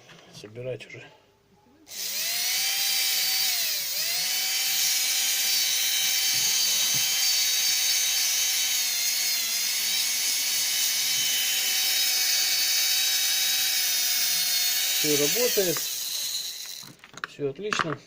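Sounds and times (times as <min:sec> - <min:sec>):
small electric motor whining: 0:01.9 - 0:17.0.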